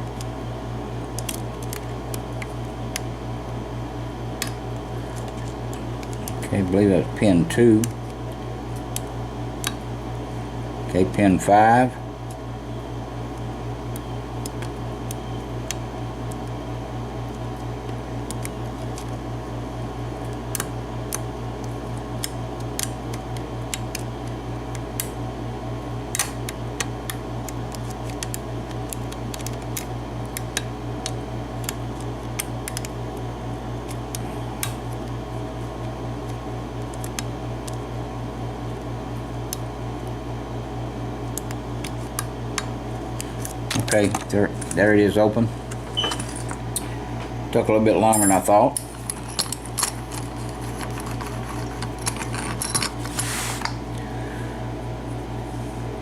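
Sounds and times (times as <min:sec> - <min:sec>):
steady low hum: 0:00.0 - 0:56.0
lock pick clicking and scraping: 0:48.8 - 0:53.7.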